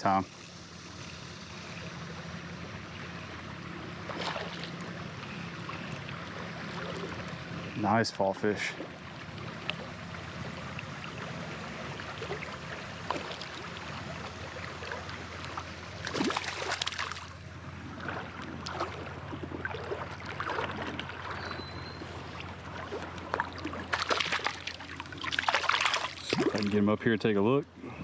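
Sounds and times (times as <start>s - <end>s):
water splashing: 0.0s - 27.0s
creek water running: 0.0s - 28.0s.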